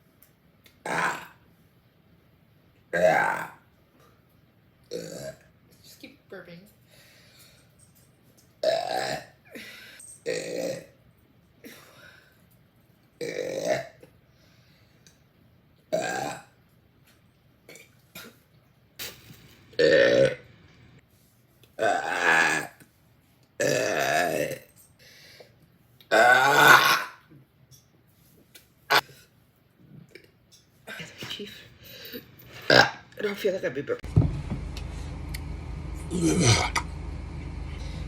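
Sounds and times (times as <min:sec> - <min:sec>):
woman burping loudly: 0:00.8 - 0:01.4, 0:02.9 - 0:03.6, 0:04.9 - 0:05.5, 0:08.6 - 0:11.0, 0:13.2 - 0:14.1, 0:15.9 - 0:16.5, 0:19.8 - 0:20.4, 0:21.8 - 0:22.8, 0:23.6 - 0:24.7, 0:26.1 - 0:27.3, 0:32.5 - 0:33.0.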